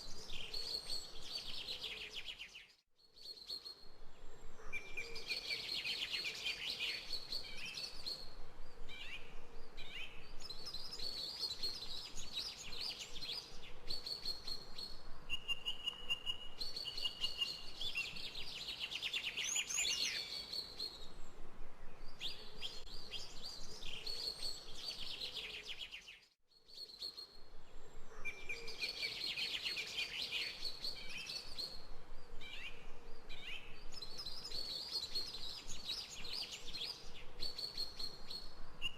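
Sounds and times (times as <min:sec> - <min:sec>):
songbirds chirping and singing: 0:00.1 - 0:15.0, 0:15.6 - 0:21.1, 0:22.1 - 0:31.9.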